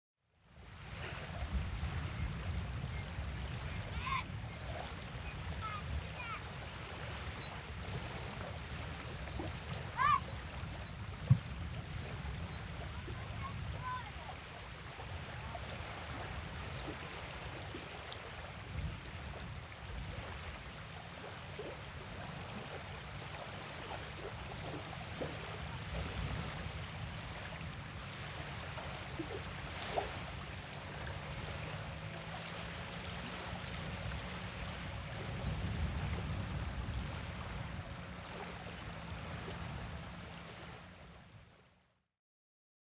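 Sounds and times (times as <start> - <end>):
river water rippling: 0.4 - 41.9
faint children's voices: 3.6 - 6.8, 9.4 - 10.4, 12.6 - 15.7.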